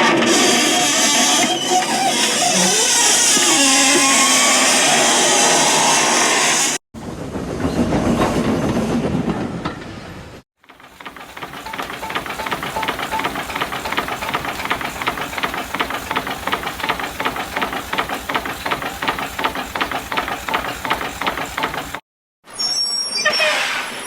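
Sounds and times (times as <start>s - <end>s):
model locomotive chugging: 10.6s - 22.0s.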